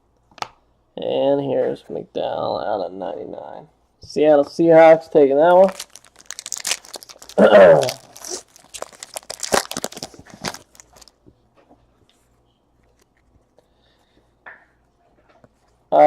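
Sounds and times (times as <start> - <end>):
plastic crinkling: 5.5 - 11.3.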